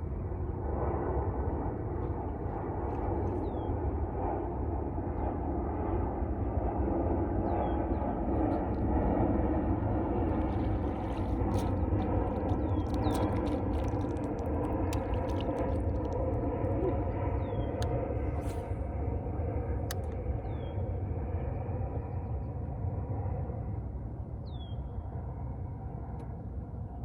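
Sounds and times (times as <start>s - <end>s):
boat motor droning: 8.5s - 18.8s.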